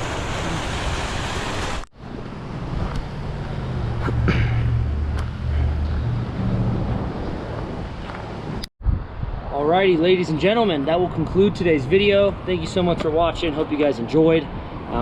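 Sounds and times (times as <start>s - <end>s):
creek water rushing: 0.0s - 1.9s
wind gusts on microphone: 6.0s - 15.0s.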